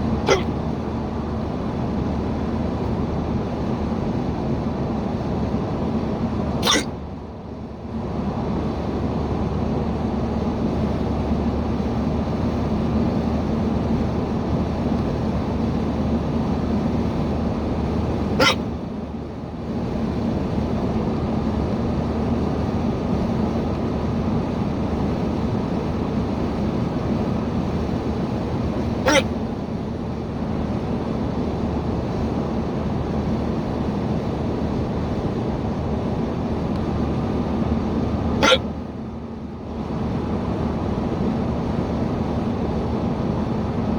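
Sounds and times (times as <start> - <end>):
car engine and road noise: 0.0 - 43.9
person hiccuping: 0.2 - 0.6, 6.6 - 6.9, 18.4 - 18.7, 29.0 - 29.4, 38.4 - 38.7.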